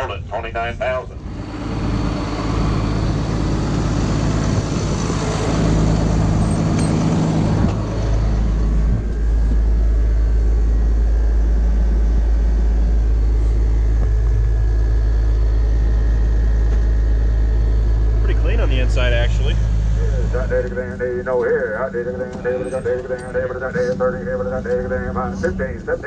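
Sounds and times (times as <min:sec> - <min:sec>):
tractor engine running: 0:01.0 - 0:26.0.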